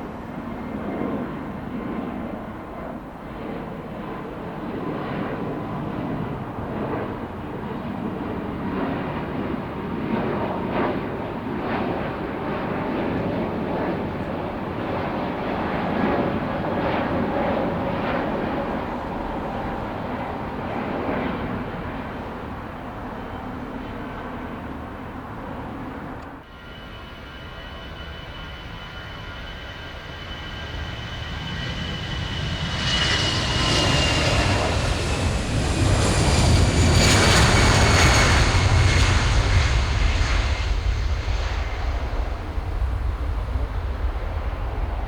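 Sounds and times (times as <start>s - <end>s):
jet engine roar: 0.0s - 45.0s
thin steady whine: 26.4s - 33.2s.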